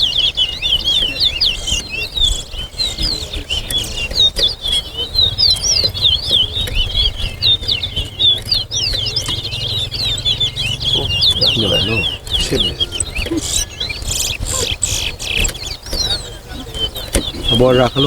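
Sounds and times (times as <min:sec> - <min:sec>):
finch singing warbling song: 0:00.0 - 0:18.0
steady low rumble: 0:04.9 - 0:16.7.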